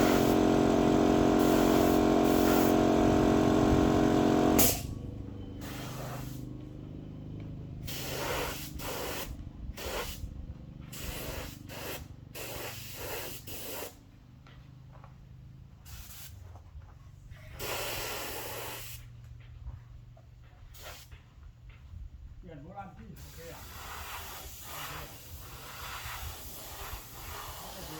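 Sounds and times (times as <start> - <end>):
paint spray gun bursts: 0.0 - 5.0, 5.6 - 6.5, 7.9 - 10.2, 10.9 - 14.0, 15.9 - 16.3, 17.6 - 19.1, 23.2 - 27.9
low hum: 0.0 - 8.0.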